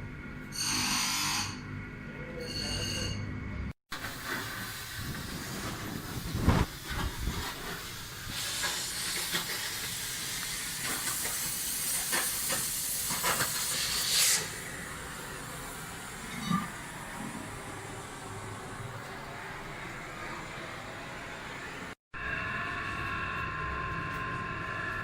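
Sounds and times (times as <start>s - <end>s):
pressurised gas hissing: 4.0s - 16.9s.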